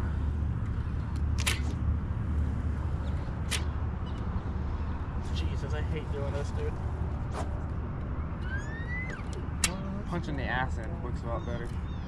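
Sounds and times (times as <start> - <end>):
steady low rumble: 0.0 - 8.4
sharp snaps or swishes: 7.3 - 7.6.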